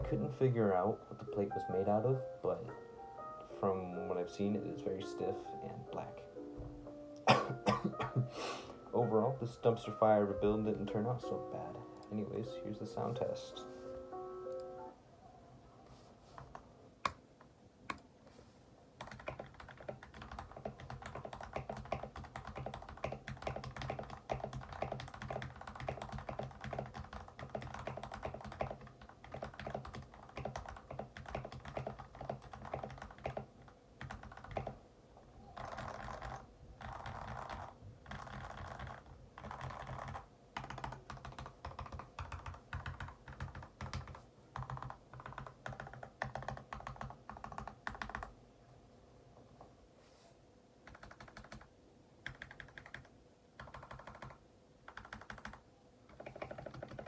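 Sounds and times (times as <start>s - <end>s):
mechanical keyboard typing: 19.0s - 34.8s, 35.5s - 48.3s, 50.8s - 57.0s.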